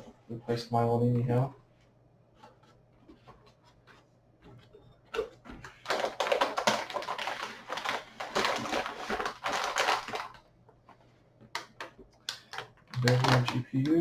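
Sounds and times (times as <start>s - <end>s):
packaging rustling and crackling: 5.2s - 10.4s, 11.6s - 14.0s.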